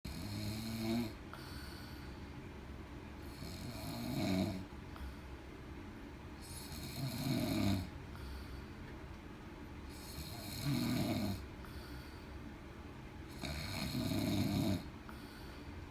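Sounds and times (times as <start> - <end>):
man snoring loudly: 0.1 - 1.2, 3.3 - 4.7, 6.4 - 7.9, 9.9 - 11.5, 13.3 - 14.9.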